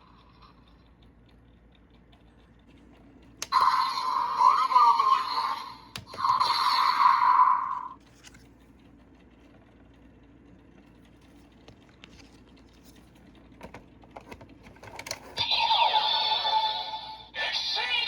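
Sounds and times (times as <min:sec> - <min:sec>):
toy electronic sound effect: 0:03.4 - 0:08.0, 0:15.4 - 0:18.0
plastic parts clicking: 0:05.9 - 0:06.4, 0:13.6 - 0:15.4.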